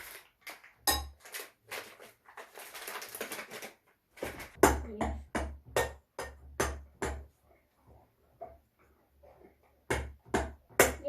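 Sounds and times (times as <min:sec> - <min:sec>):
sharp knocks with dull thud: 0:09.9 - 0:11.0.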